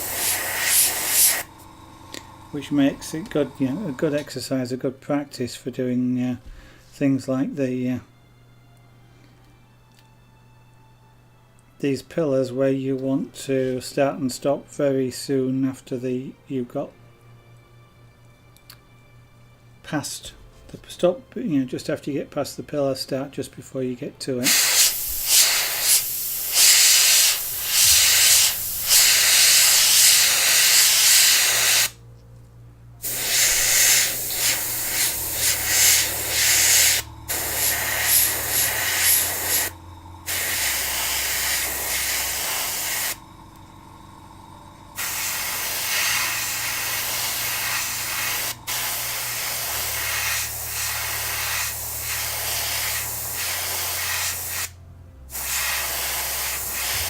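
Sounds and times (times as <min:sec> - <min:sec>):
airbrush spraying hiss: 0:00.0 - 0:04.0, 0:24.4 - 0:32.0, 0:33.0 - 0:57.0.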